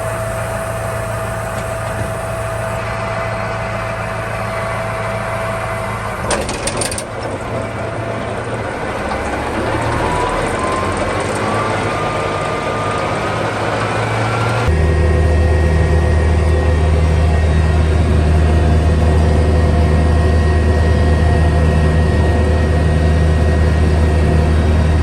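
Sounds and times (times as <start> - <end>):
rising whine: 0.0 - 25.0
tractor engine running: 0.0 - 25.0
brief clatter: 6.2 - 7.7.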